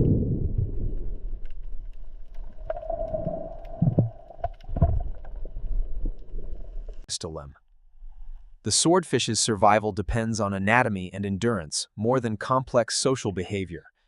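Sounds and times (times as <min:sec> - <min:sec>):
underwater rush of water: 0:01.4 - 0:07.0.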